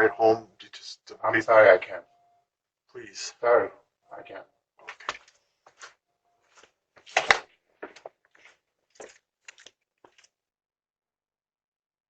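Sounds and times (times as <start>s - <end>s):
scuffs and knocks: 4.8s - 10.3s.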